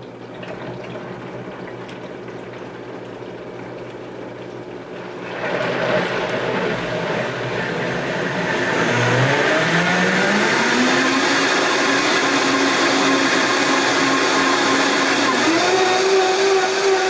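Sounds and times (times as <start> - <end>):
electric blender whirring: 5.0 - 17.0.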